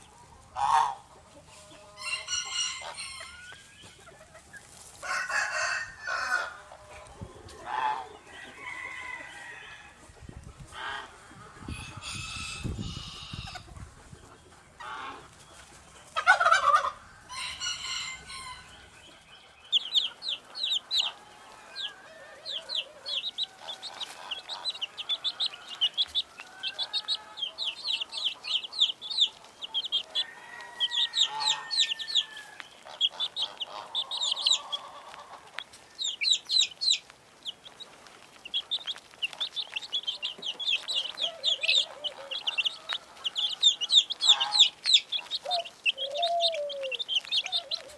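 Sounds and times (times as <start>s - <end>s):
chickens calling: 0.0s - 47.9s
chicks peeping rapidly: 0.0s - 47.9s
soft hen clucks: 0.0s - 47.9s.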